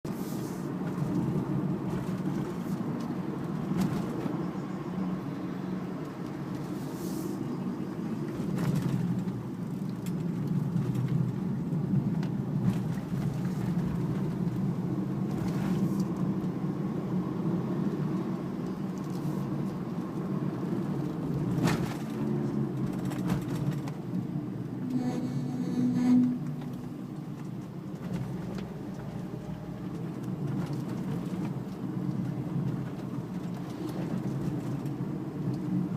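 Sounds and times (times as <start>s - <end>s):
road and engine noise: 0.0s - 35.9s
brake groaning: 24.6s - 31.5s.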